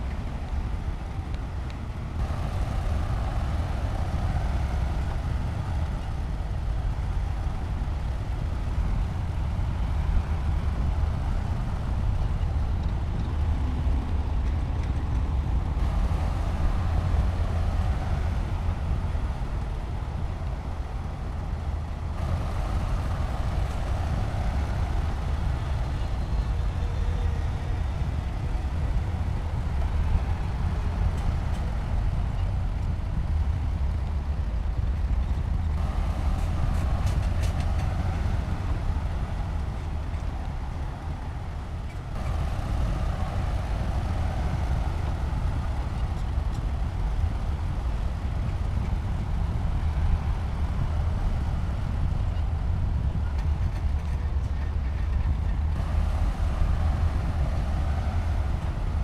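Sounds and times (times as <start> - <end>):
bulldozer engine rumbling: 0.0 - 59.0.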